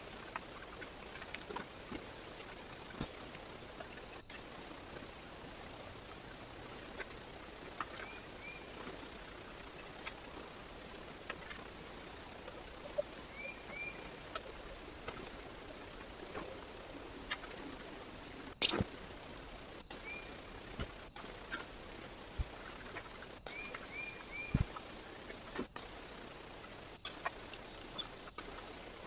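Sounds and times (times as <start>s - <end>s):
microphone hiss: 0.0s - 29.0s
birds chirping: 7.9s - 18.8s
light ticks: 24.5s - 28.6s.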